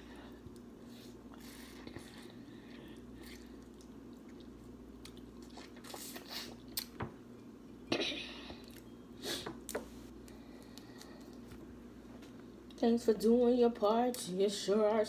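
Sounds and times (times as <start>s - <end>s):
person chewing: 0.5s - 7.5s.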